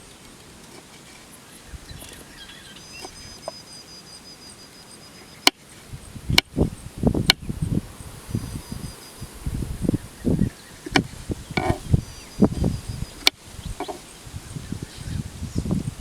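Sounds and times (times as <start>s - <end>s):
outdoor ambience: 0.0s - 16.0s
handling thumps and rustling: 10.8s - 14.0s
sharp knocks: 10.9s - 11.8s.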